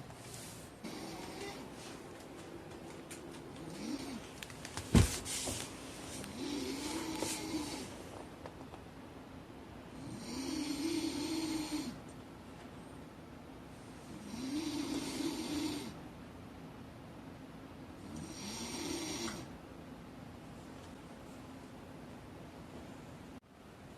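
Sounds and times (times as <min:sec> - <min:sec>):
person snoring: 0:06.3 - 0:07.9, 0:10.0 - 0:12.0, 0:14.1 - 0:16.0, 0:18.1 - 0:19.5.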